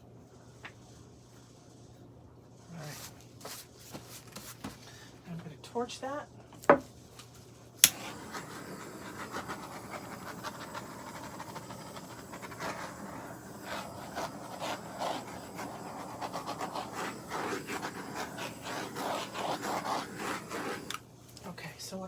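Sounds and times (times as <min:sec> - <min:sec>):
gas torch hissing: 0:07.8 - 0:21.1.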